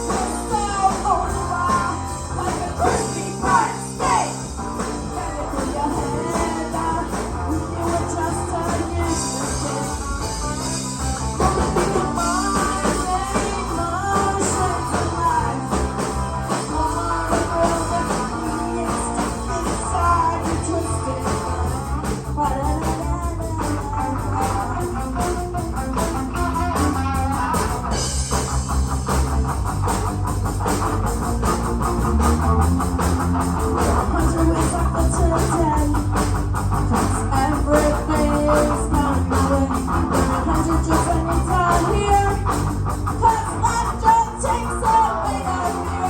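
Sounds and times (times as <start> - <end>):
person singing: 0.0 - 24.8, 33.8 - 36.3, 36.9 - 46.0
rock band playing: 0.0 - 46.0.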